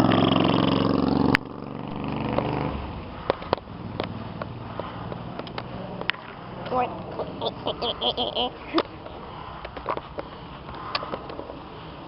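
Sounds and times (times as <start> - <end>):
motorcycle engine running: 0.0 - 5.0.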